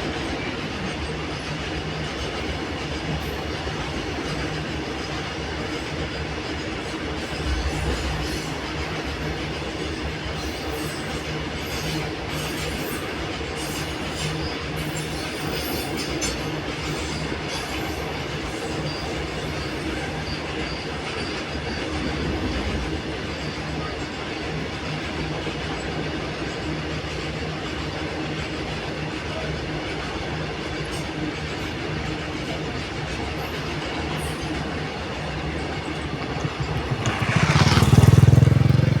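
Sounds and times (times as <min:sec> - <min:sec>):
train wheels rumbling on bridge: 0:00.0 - 0:39.0
high wheel squeals: 0:03.0 - 0:24.7, 0:32.7 - 0:39.0.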